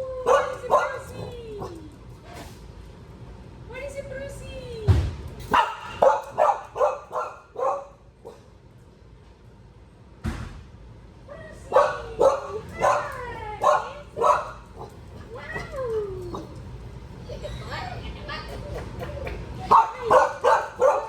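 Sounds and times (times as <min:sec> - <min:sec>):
dog barking: 0:00.2 - 0:01.2, 0:05.5 - 0:08.5, 0:11.7 - 0:15.0, 0:19.7 - 0:21.0
thump: 0:04.9 - 0:05.2, 0:10.2 - 0:10.7.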